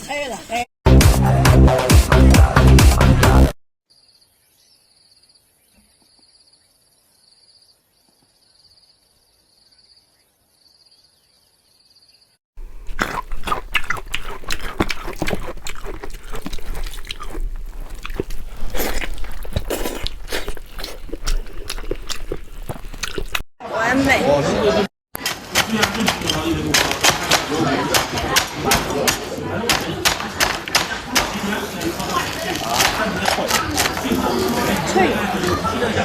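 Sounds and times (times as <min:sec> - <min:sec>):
food crackling while cooking: 0:12.6 - 0:23.4.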